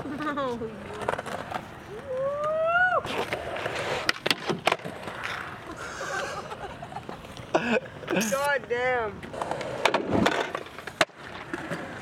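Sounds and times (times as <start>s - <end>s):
skateboard clacks: 0.0s - 5.8s, 6.9s - 12.0s
skateboard wheels rolling on pavement: 0.0s - 12.0s.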